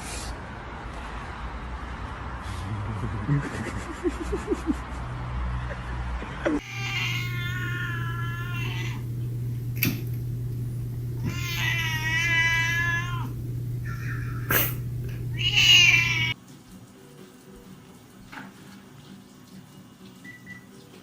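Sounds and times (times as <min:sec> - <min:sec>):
cat meowing: 0:06.6 - 0:09.2, 0:11.1 - 0:16.4
steady low hum: 0:06.7 - 0:16.4.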